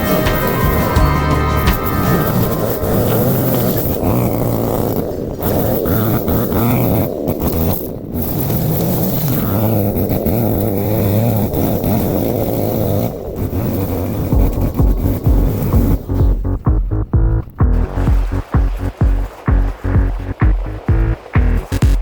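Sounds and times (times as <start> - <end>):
lawn mower engine running: 0.0 - 4.8.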